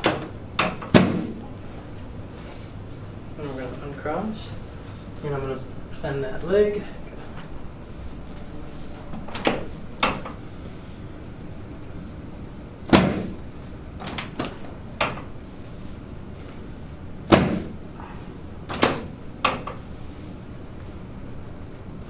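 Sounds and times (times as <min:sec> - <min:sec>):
treatment table knocks: 0:00.0 - 0:01.4, 0:12.9 - 0:13.4, 0:17.3 - 0:17.8.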